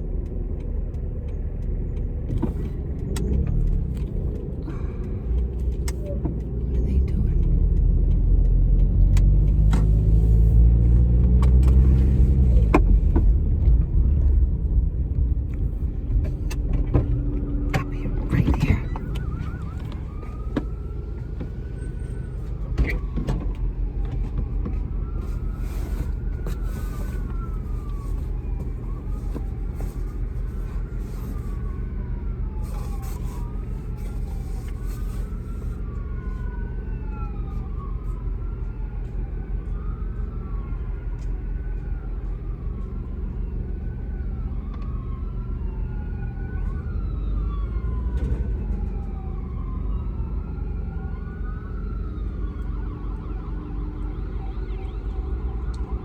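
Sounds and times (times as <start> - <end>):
low rumble: 0.0 - 56.0
emergency siren wailing: 15.9 - 56.0.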